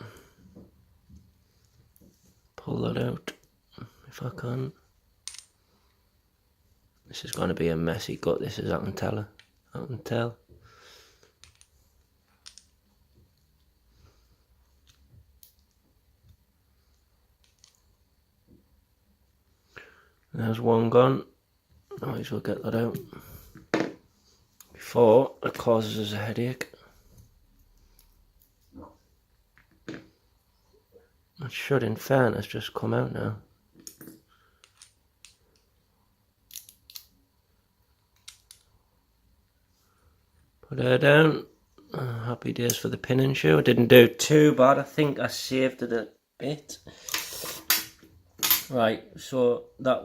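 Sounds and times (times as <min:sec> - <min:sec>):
small metal parts clicking: 0:05.2 - 0:05.5, 0:11.4 - 0:11.8, 0:12.4 - 0:12.8, 0:33.8 - 0:35.7, 0:36.5 - 0:37.1.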